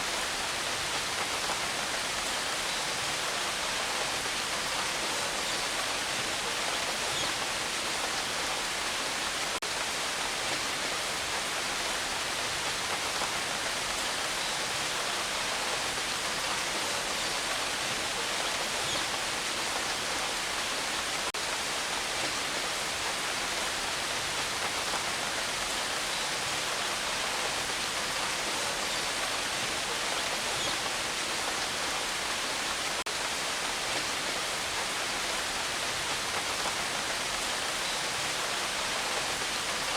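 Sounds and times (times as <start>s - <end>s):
rain falling: 0.0s - 39.9s.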